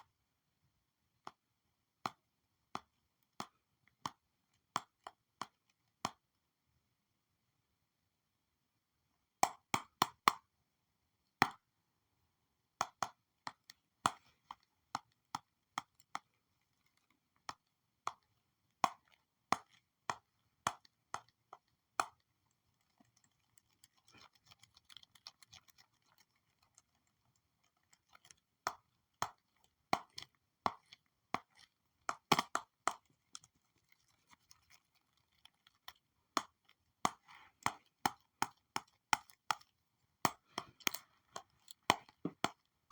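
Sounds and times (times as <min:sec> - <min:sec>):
stylus tapping on tablet: 0:40.3 - 0:42.6.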